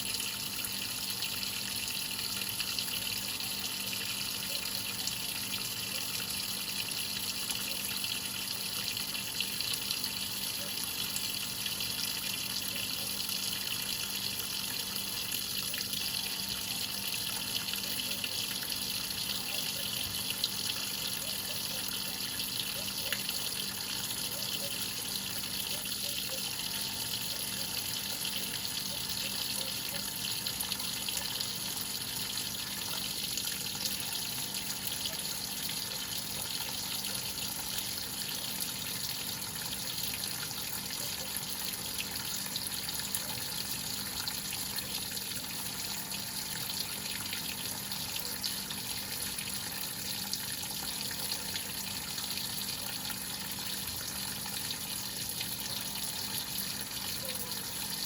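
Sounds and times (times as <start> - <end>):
water filling washing machine: 0.0 - 58.0.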